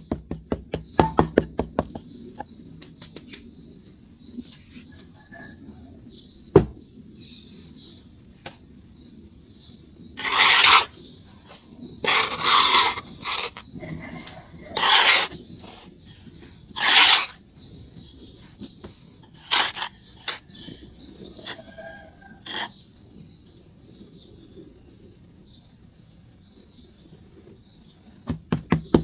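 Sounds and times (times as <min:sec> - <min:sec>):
charcoal scraped by hand: 0:10.2 - 0:10.9, 0:12.0 - 0:13.6, 0:14.8 - 0:15.9, 0:16.7 - 0:17.4, 0:19.2 - 0:21.8, 0:22.4 - 0:22.8.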